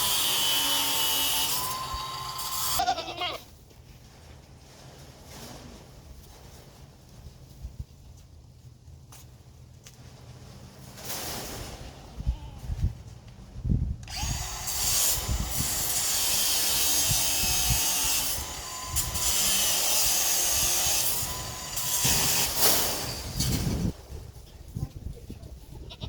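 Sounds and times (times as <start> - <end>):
power drill running: 0.0 - 2.8, 14.0 - 23.5.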